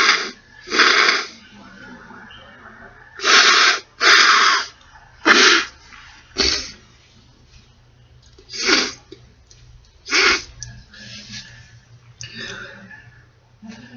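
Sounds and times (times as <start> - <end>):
person sneezing: 3.2 - 5.8, 6.4 - 6.8, 8.5 - 9.1, 10.1 - 11.4.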